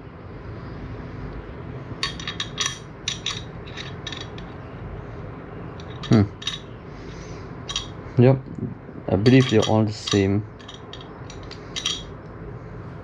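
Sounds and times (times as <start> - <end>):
metal screws clinking: 2.0 - 4.5, 5.8 - 6.7, 7.7 - 8.0, 9.3 - 12.1.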